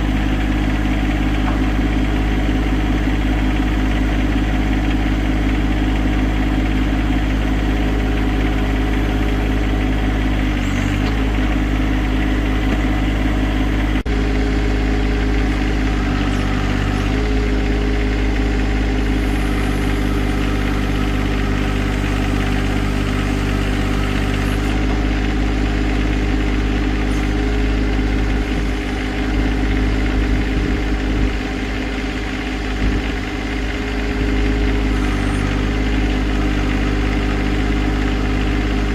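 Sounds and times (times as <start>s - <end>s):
tractor diesel engine idling: 0.0s - 38.9s.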